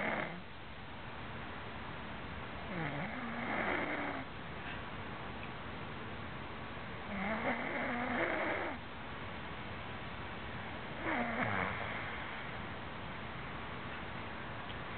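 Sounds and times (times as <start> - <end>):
man snoring: 0.0 - 0.4, 2.7 - 4.3, 7.1 - 8.8, 11.0 - 12.2.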